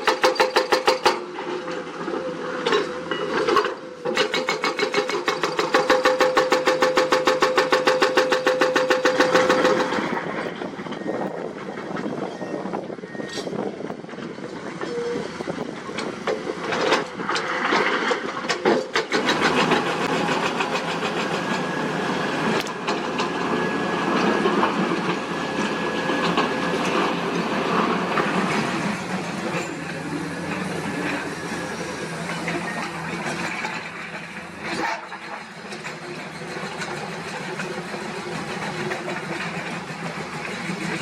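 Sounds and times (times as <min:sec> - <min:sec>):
diesel engine under load: 0:00.0 - 0:41.0.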